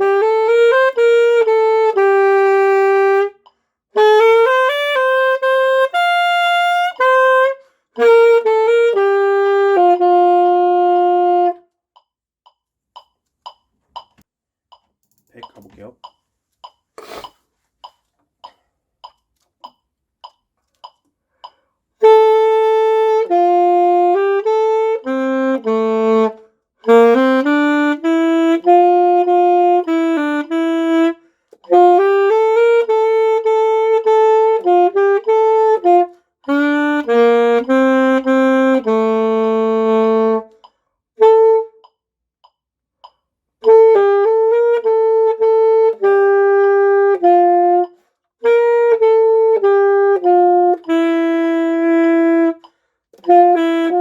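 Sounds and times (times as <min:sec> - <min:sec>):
saxophone melody: 0:00.0 - 0:11.8, 0:22.0 - 0:41.9, 0:43.6 - 0:54.0
metronome ticking: 0:00.1 - 0:54.0.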